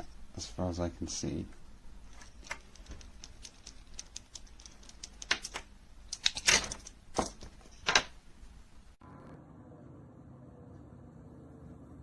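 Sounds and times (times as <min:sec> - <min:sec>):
steady low hum: 0:08.2 - 0:12.0.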